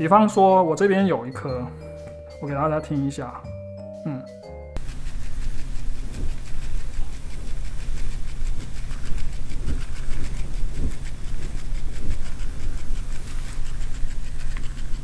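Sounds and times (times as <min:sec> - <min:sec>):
steady low hum: 0:04.8 - 0:15.0.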